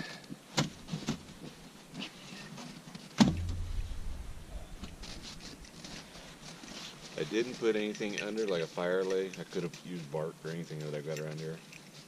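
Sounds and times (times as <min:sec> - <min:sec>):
wood thump: 0:03.2 - 0:05.1
low rumble: 0:03.3 - 0:05.8.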